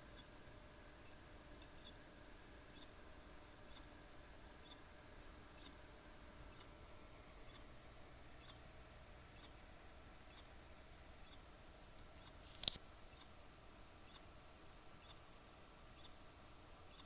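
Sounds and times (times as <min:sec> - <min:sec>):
faint high-pitched chirps and clicks: 0:00.0 - 0:00.4, 0:01.0 - 0:02.0, 0:02.7 - 0:03.0, 0:03.6 - 0:03.9, 0:04.5 - 0:04.9, 0:05.5 - 0:05.8, 0:06.4 - 0:06.8, 0:07.4 - 0:07.7, 0:08.3 - 0:08.6, 0:09.3 - 0:09.6, 0:10.2 - 0:10.6, 0:11.2 - 0:13.4, 0:14.0 - 0:14.4, 0:15.0 - 0:15.3, 0:15.9 - 0:17.0
low steady hum: 0:00.0 - 0:17.0.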